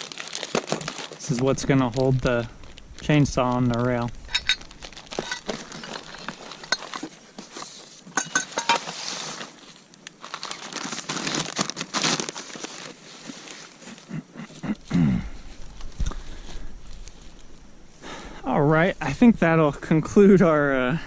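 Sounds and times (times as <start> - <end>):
packaging crinkling and rustling: 0.0 - 14.1.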